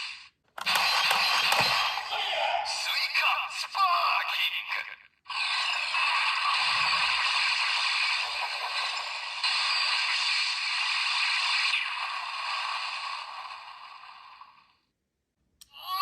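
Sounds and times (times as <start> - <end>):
electronic toy sound effect: 0.6 - 3.3, 5.3 - 12.4.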